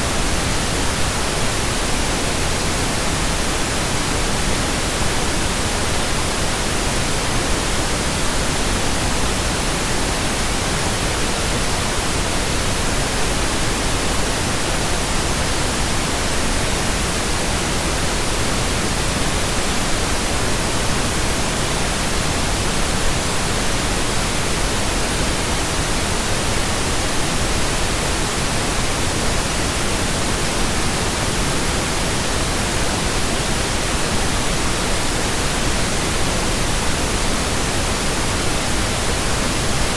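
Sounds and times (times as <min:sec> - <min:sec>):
pink noise hiss: 0:00.0 - 0:39.9.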